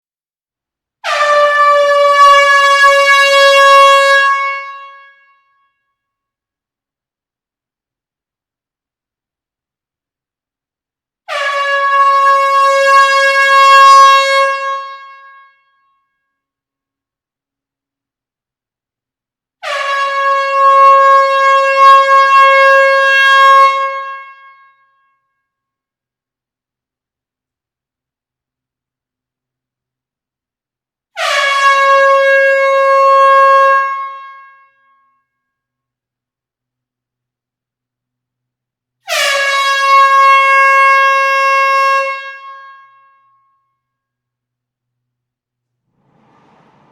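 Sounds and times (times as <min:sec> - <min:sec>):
air horn blast: 0:01.0 - 0:05.1, 0:11.3 - 0:15.2, 0:45.9 - 0:46.9.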